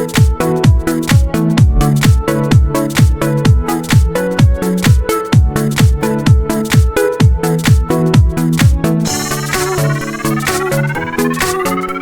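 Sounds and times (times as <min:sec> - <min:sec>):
electronic dance music: 0:01.6 - 0:02.5
synth sweep rising in pitch: 0:01.7 - 0:02.3.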